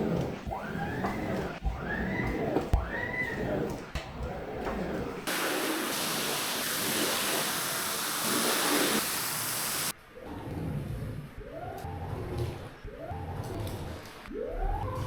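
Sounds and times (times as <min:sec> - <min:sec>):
high-pressure water spraying: 0:05.3 - 0:09.9.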